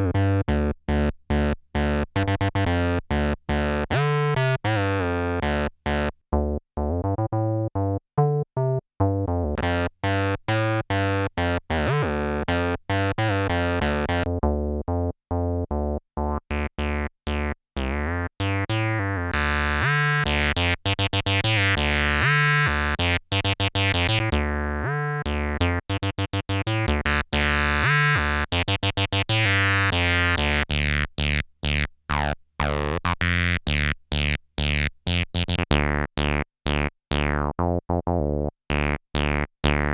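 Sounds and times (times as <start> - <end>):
squelchy acid bass synthesizer: 15.8 - 39.9.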